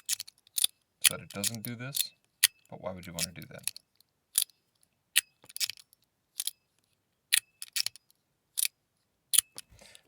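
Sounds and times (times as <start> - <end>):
sharp metallic clicks: 0.0 - 3.8.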